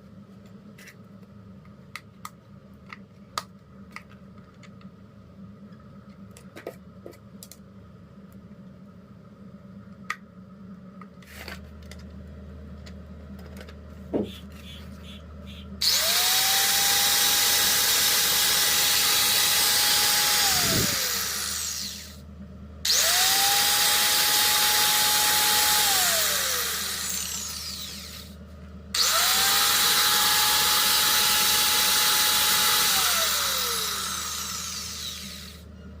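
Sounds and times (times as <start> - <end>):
cutting machine motor whining: 14.2 - 22.2, 22.9 - 28.4, 29.0 - 35.7.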